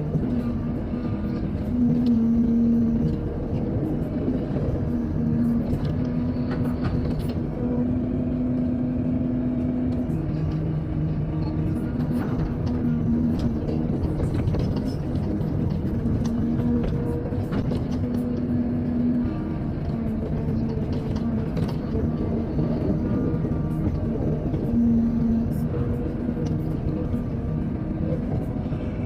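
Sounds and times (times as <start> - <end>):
excavator diesel engine running: 0.0 - 29.0.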